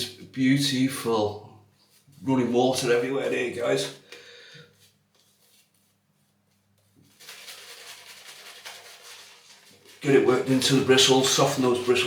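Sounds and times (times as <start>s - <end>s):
shaving brush rubbing lather: 7.0s - 12.0s.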